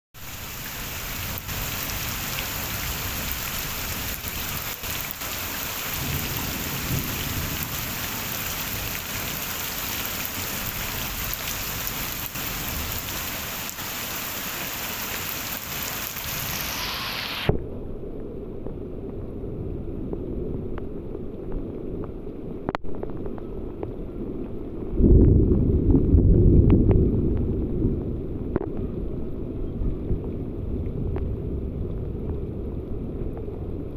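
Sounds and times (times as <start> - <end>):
heavy rain falling: 0.2 - 17.5
loud low rumble: 24.9 - 33.9.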